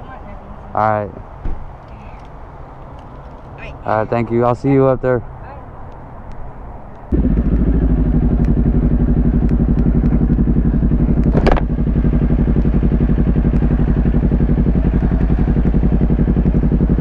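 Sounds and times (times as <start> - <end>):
motorcycle engine idling: 7.1 - 17.0.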